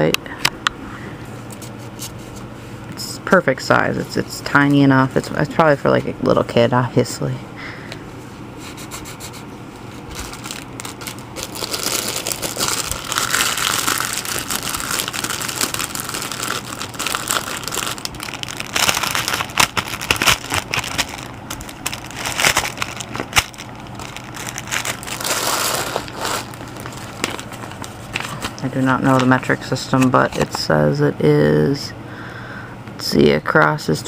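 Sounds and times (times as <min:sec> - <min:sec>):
crinkly plastic rustling: 0:09.9 - 0:30.7.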